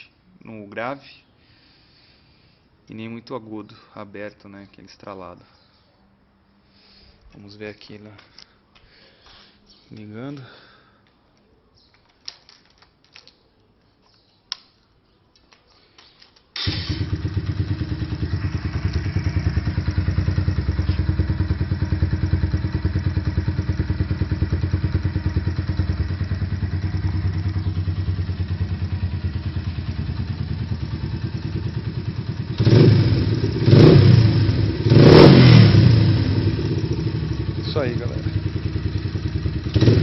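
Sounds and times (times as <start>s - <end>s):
motorcycle engine starting and idling: 16.5s - 40.0s
engine revving: 16.6s - 40.0s.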